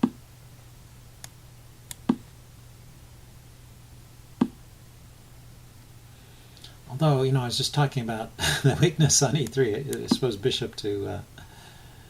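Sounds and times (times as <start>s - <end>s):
low steady hum: 0.0s - 12.0s.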